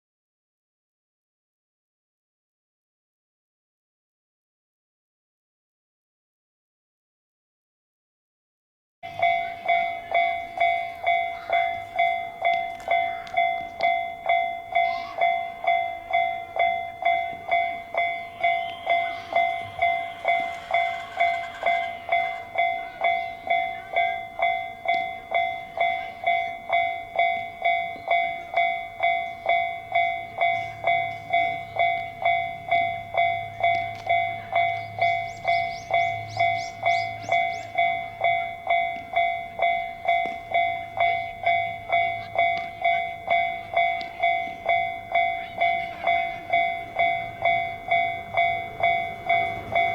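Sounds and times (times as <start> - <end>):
level crossing bell ringing: 9.1 - 49.9
train rumbling: 9.1 - 49.9
train wheel clicks: 17.2 - 25.0, 40.1 - 49.9.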